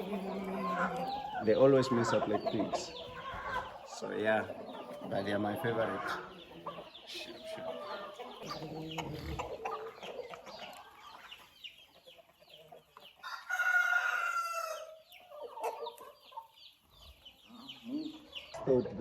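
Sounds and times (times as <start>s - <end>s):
chickens clucking: 0.0s - 19.0s
rooster crowing: 13.2s - 14.9s.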